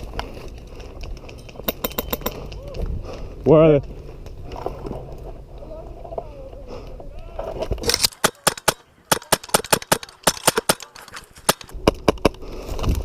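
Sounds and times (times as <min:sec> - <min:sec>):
airsoft gun firing: 0:07.8 - 0:11.8.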